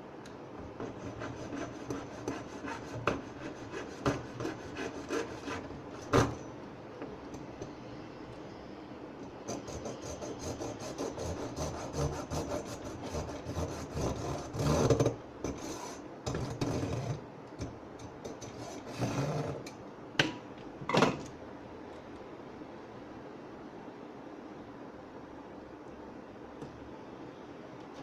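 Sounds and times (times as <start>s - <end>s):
hand tool scraping plastic: 9.5s - 17.2s, 18.3s - 19.7s.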